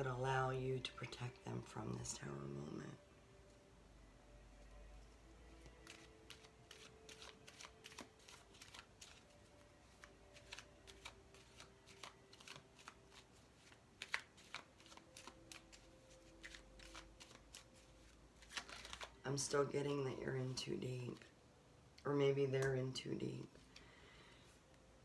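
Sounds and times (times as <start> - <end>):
cards being shuffled: 5.5 - 19.9.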